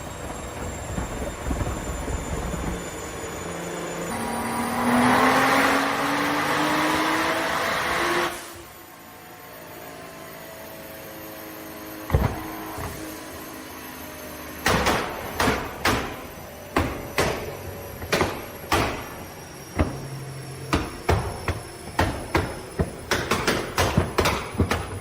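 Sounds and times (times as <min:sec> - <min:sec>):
car exhaust popping and banging: 0:20.7 - 0:25.0.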